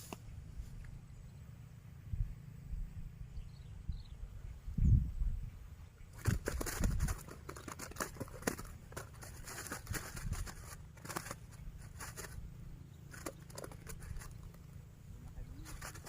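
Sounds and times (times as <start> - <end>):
handling clicks and rustles: 6.2 - 16.0.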